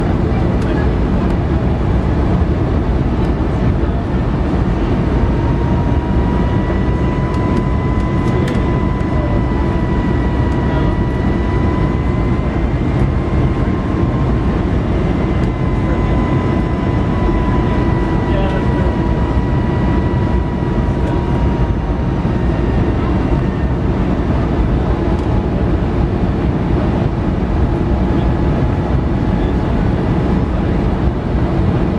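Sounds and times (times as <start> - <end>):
engine and airflow rush: 0.0 - 31.9
thin engine whine: 3.2 - 26.0.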